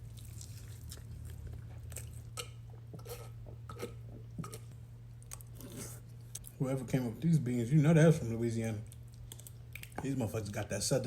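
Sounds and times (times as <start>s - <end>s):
person chewing crunchy food: 0.0s - 6.6s, 8.8s - 10.0s.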